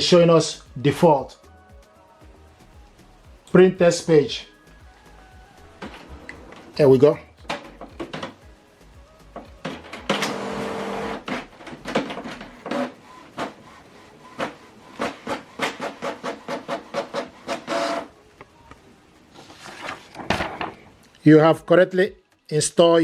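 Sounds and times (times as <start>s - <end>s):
printer clicks and ticks: 9.6s - 18.1s
printer motor whirring: 9.6s - 18.1s.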